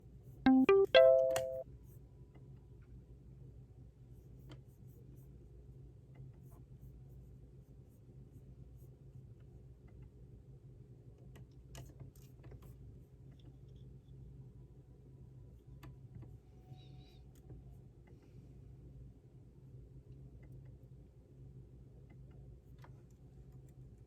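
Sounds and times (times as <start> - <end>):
low steady hum: 0.5 - 4.3.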